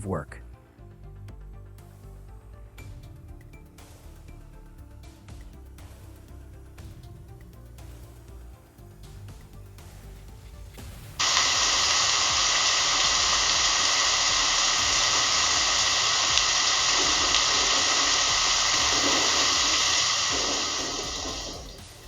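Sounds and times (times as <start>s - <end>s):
rushing water: 11.2s - 22.0s.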